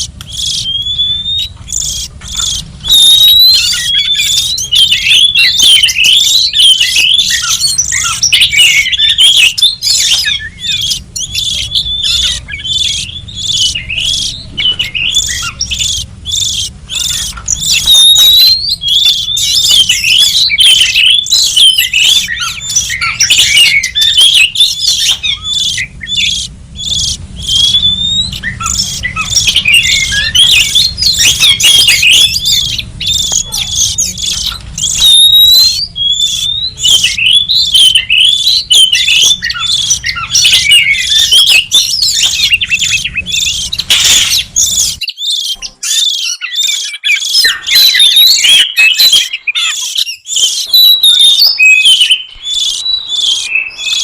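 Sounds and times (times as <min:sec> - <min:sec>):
bird song whistles and chattering: 0:00.0 - 0:54.0.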